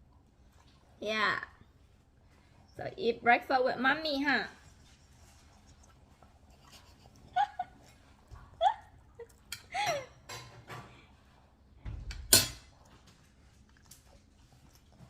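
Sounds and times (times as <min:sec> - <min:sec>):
dishes and utensils clinking: 0:09.4 - 0:11.0, 0:11.9 - 0:12.8.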